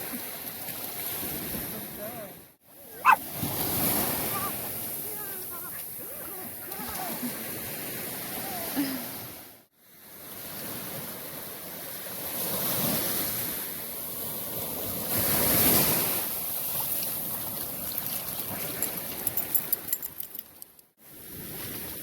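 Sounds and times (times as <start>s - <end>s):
ocean surf breaking: 1.0s - 9.6s.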